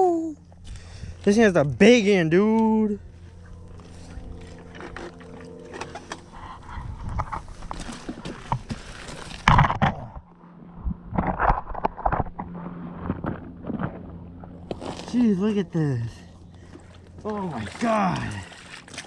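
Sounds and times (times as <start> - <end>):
faint low hum: 0.0 - 19.0
fish handling noises: 3.3 - 9.9
water splashing: 16.9 - 19.0.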